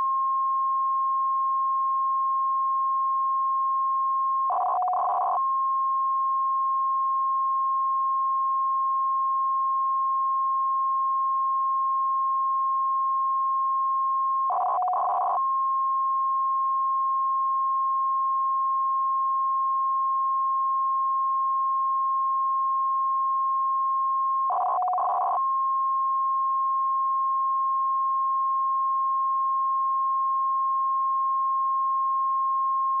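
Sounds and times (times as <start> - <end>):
steady radio beep tone: 4.6 - 5.4, 13.3 - 15.6, 23.0 - 25.4.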